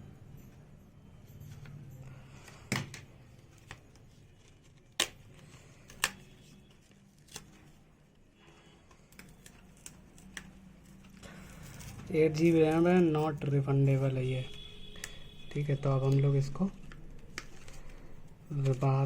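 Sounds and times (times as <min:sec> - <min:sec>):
plastic packaging clicks and snaps: 0:02.7 - 0:06.2, 0:09.0 - 0:11.1.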